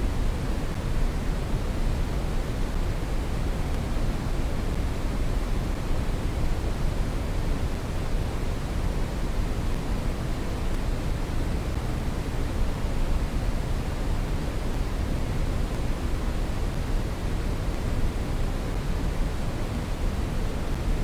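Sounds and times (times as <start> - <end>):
brown noise hiss: 0.0 - 21.0.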